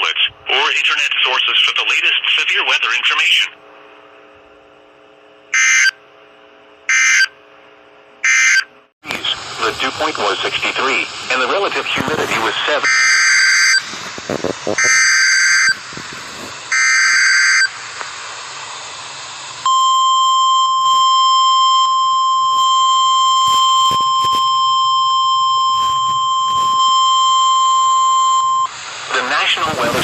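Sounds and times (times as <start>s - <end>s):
radio hiss: 0.0s - 3.6s, 9.0s - 16.7s, 28.7s - 30.0s
steady alarm tone: 5.5s - 6.0s, 6.9s - 7.4s, 8.2s - 8.7s, 12.7s - 13.9s, 14.7s - 16.0s, 16.7s - 17.8s, 19.6s - 28.8s.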